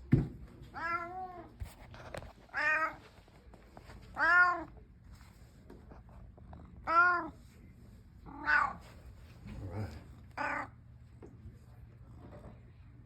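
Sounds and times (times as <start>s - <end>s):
cat meowing: 0.7s - 1.5s, 4.2s - 4.7s, 6.8s - 7.4s, 8.3s - 8.8s, 10.4s - 10.8s.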